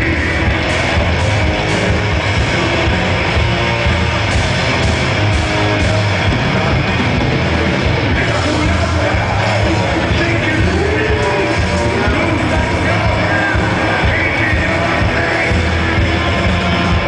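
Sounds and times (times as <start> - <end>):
heavy metal band playing: 0.0 - 17.0.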